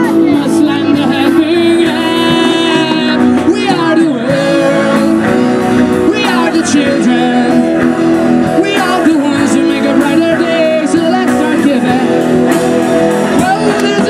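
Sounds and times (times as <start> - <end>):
guitar accompaniment: 0.0 - 14.0
person singing: 0.0 - 14.0.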